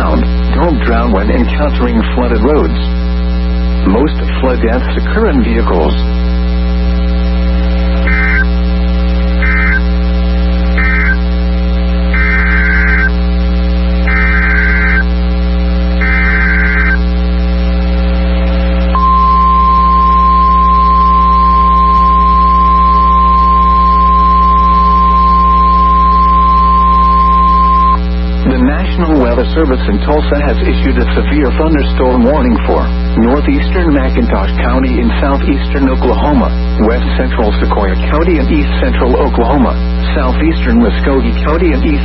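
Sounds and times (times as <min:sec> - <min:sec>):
buzzy data tone bursts: 0:00.0 - 0:42.0
electrical hum: 0:00.0 - 0:42.0
weather radio alarm tone: 0:08.0 - 0:08.5, 0:09.4 - 0:09.9, 0:10.8 - 0:11.3, 0:12.1 - 0:13.2, 0:14.1 - 0:15.1, 0:16.0 - 0:17.0, 0:18.9 - 0:28.0.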